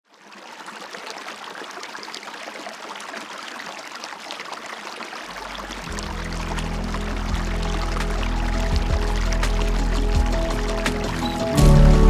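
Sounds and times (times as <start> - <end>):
river flowing over rocks: 4.0 - 12.0
low music notes: 5.6 - 12.0.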